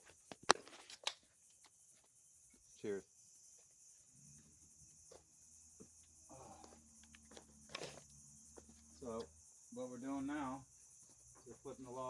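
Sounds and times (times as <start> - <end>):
crickets chirring: 0.0 - 12.0.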